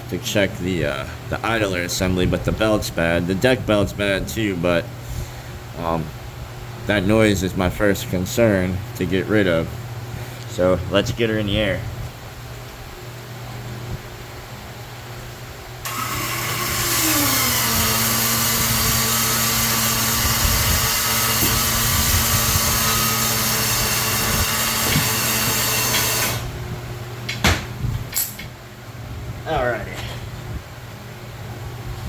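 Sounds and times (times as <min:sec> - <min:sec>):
lift motor running: 0:15.8 - 0:26.6.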